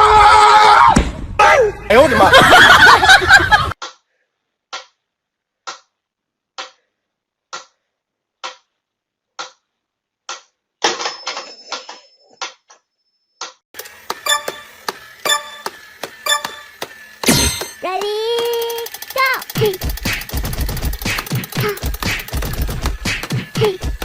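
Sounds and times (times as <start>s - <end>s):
sharp clock-like ticks: 13.8s - 24.0s
thin high tone: 14.2s - 19.4s
rapid dense clicks: 18.0s - 23.6s.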